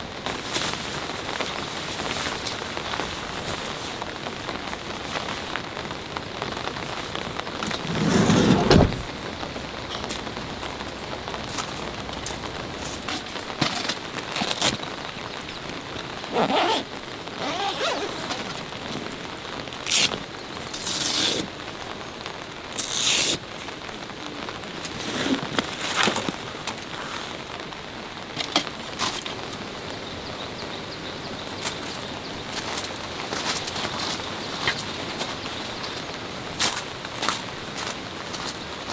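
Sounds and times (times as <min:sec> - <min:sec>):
rain falling: 0:00.0 - 0:38.9
rustling and handling noise: 0:00.3 - 0:19.2.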